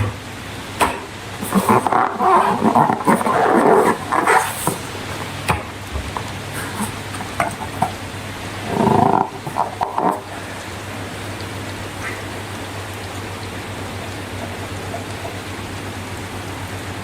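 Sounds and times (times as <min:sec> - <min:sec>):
slime squelching: 0:01.3 - 0:05.5, 0:06.3 - 0:10.6.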